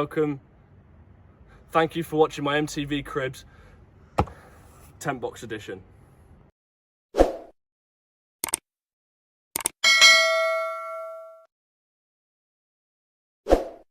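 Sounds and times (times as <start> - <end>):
dull thump: 4.2 - 4.6
double clicks: 8.4 - 8.6, 9.6 - 9.8
bell-like ding: 9.8 - 11.5.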